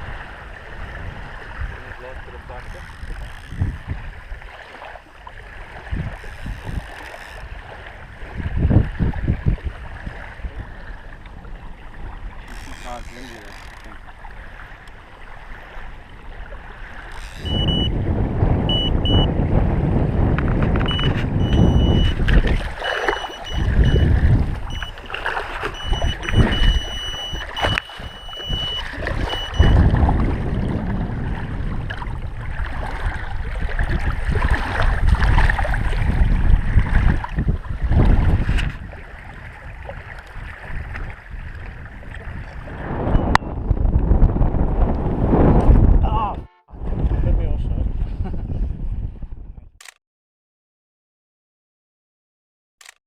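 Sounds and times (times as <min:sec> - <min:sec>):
wind and water rumbling on microphone: 0:00.0 - 0:49.8
thin high tone: 0:22.8 - 0:25.0, 0:25.7 - 0:29.8.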